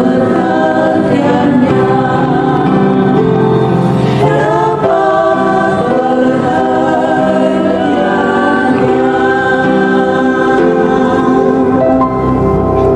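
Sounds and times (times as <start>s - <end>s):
choir singing in harmony: 0.0s - 12.9s.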